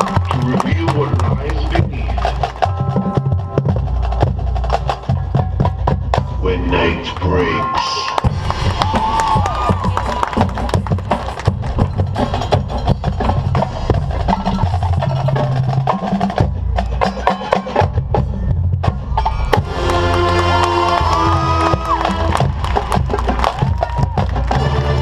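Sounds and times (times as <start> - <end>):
marching percussion hits: 0.0 - 25.0
brass chords: 19.2 - 23.4.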